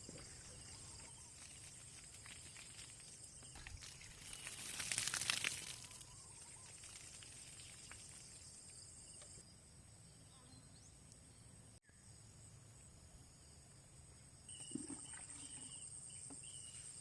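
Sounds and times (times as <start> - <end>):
high-pitched insect chorus: 0.0 - 10.2
burst of crackly noise: 4.1 - 6.0.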